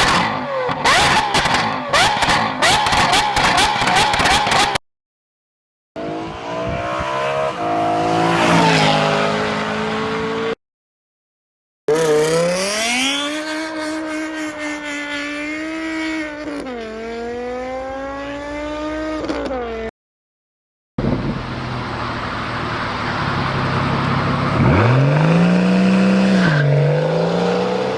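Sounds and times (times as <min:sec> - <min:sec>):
car engine revving: 0:00.0 - 0:04.8, 0:11.9 - 0:19.4, 0:21.1 - 0:27.9.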